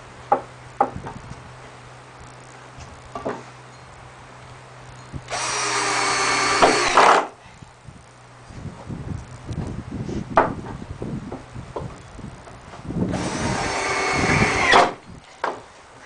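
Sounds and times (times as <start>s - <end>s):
power drill motor whine: 5.3s - 7.3s, 13.1s - 15.0s.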